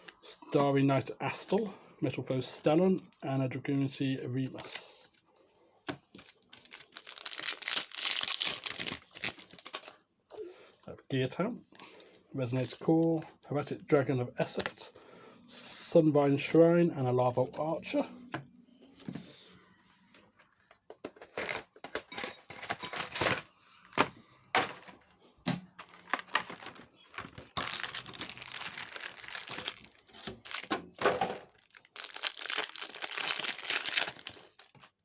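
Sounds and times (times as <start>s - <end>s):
foil wrapper crinkling and tearing: 6.2s - 10.0s, 25.8s - 30.7s, 31.4s - 35.0s.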